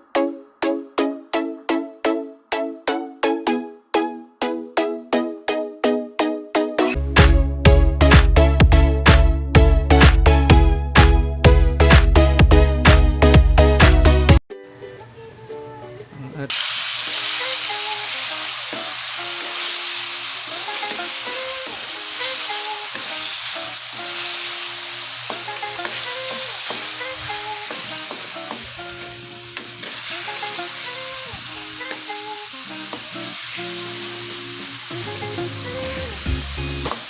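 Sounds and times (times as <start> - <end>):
background music: 0.0 - 37.0
food sizzling in a pan: 16.5 - 37.0.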